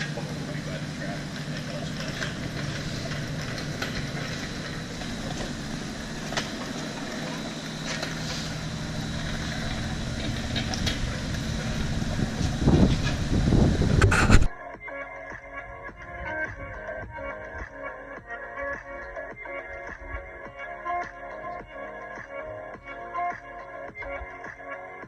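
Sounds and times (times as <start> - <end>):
car engine running: 0.0 - 14.5.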